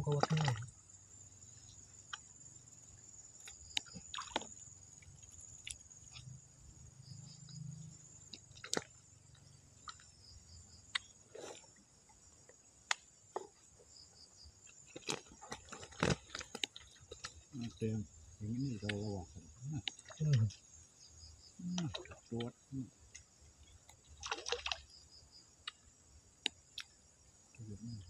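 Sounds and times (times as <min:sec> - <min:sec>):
high-pitched insect chirring: 0:16.9 - 0:26.0.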